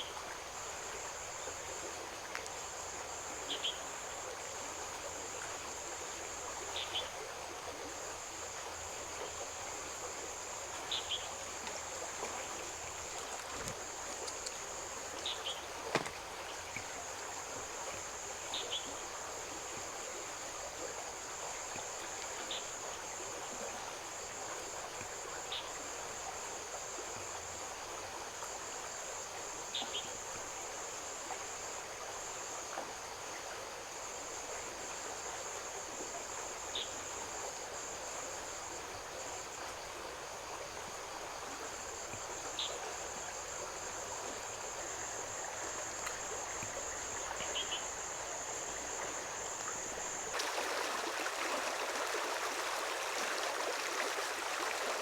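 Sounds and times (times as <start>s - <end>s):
running water rushing: 0.0s - 27.1s, 40.2s - 55.0s
insects trilling: 34.0s - 55.0s
low outdoor wash: 39.7s - 55.0s.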